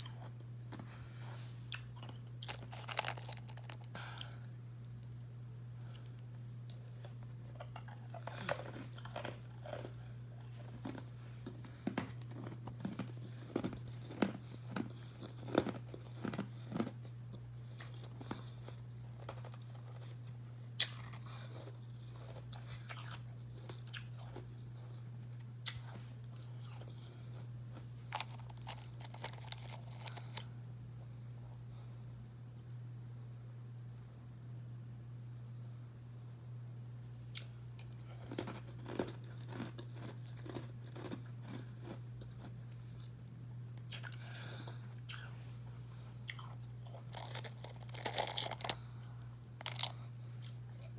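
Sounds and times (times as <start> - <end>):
mouth crunching ice: 46.3 - 50.9.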